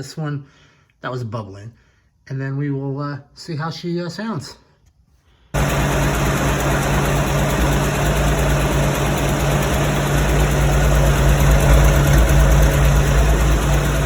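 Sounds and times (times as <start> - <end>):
car engine idling: 5.6 - 14.0.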